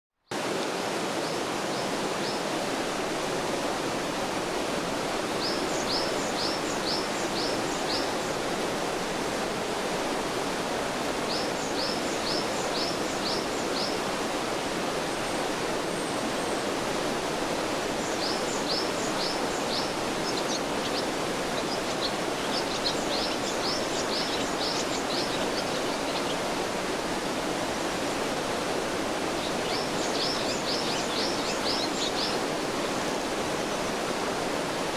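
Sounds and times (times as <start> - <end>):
stream rushing: 0.3 - 34.9
songbird singing: 5.3 - 8.2, 11.3 - 14.0, 17.9 - 26.5, 29.4 - 32.4.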